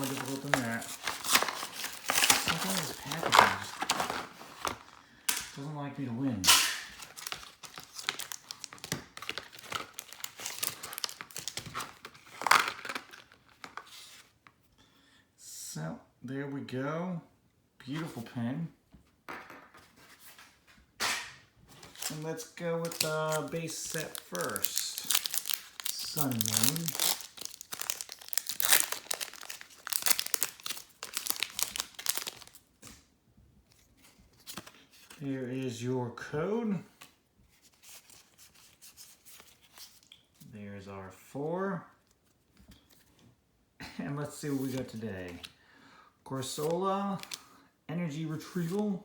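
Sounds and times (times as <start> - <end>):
plastic packaging crinkling: 0.0 - 5.6, 6.8 - 13.9, 21.8 - 32.7.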